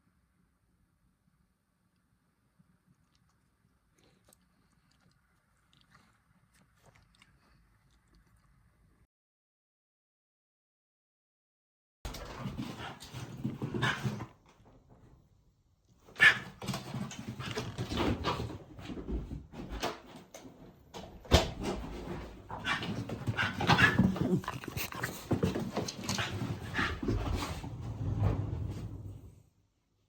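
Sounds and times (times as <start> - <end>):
dog whining and breathing: 22.5 - 27.1.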